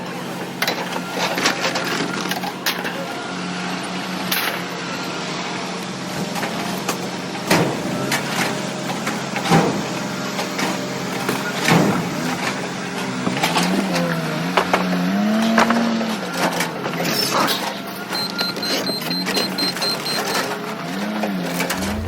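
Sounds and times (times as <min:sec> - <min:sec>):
vehicle engine humming: 0:20.2 - 0:22.0.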